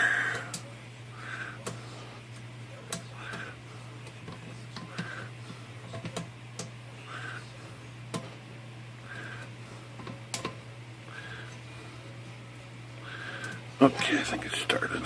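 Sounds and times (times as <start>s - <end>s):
raspy breathing: 0.0s - 2.3s, 3.1s - 4.0s, 4.8s - 5.8s, 7.0s - 7.8s, 9.0s - 10.0s, 11.1s - 12.1s, 13.0s - 14.4s
steady low hum: 0.0s - 15.0s.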